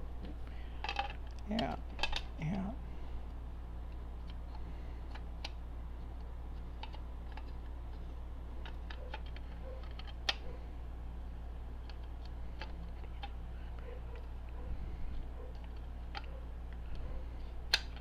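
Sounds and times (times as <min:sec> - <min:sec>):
steady low hum: 0:00.0 - 0:18.0
metal parts clicking and tapping: 0:00.8 - 0:02.3.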